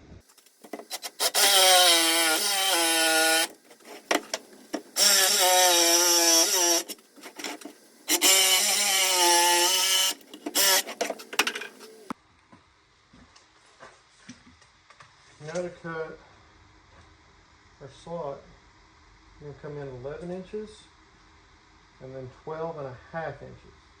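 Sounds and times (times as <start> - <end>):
power saw cutting wood: 0.7 - 12.0.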